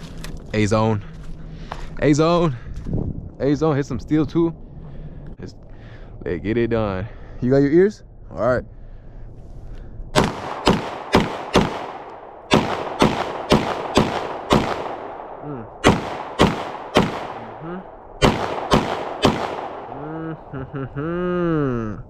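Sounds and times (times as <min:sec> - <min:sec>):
pistol shots echoing: 0:10.2 - 0:20.0.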